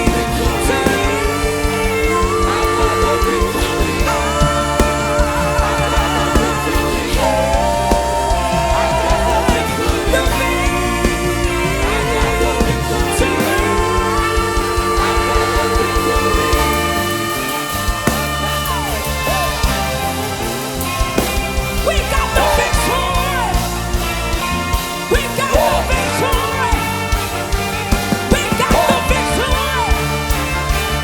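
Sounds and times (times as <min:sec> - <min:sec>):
person singing: 0:00.0 - 0:30.7
band playing chords and bass: 0:00.0 - 0:31.0.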